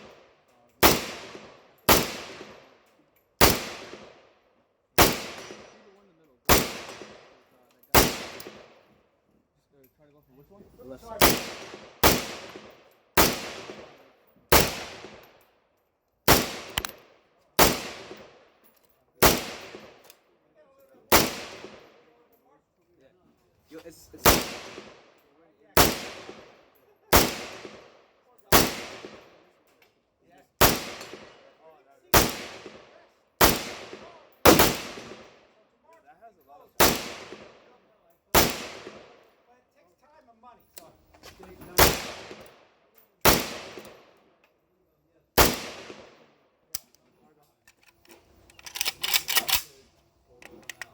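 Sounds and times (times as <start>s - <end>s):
rifle shots with echo: 0.0s - 2.8s, 3.4s - 4.4s, 5.0s - 5.9s, 6.5s - 8.9s, 11.1s - 15.4s, 16.3s - 18.6s, 19.2s - 20.1s, 21.1s - 22.1s, 24.2s - 25.2s, 25.8s - 29.5s, 30.6s - 35.5s, 36.8s - 39.4s, 41.7s - 44.2s, 45.4s - 46.9s.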